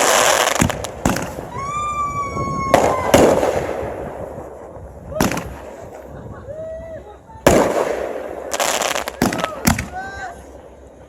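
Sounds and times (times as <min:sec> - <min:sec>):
firework whistle: 0:00.0 - 0:04.3
firework bangs: 0:00.0 - 0:06.6, 0:07.4 - 0:11.0.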